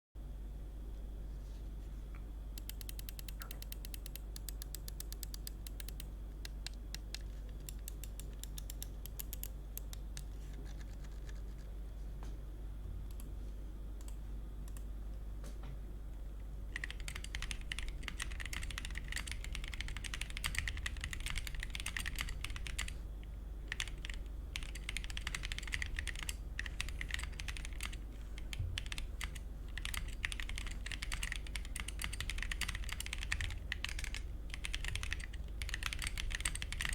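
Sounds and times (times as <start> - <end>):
steady low hum: 0.2 - 36.9
mechanical keyboard typing: 2.6 - 11.7, 16.7 - 23.0, 23.7 - 36.9.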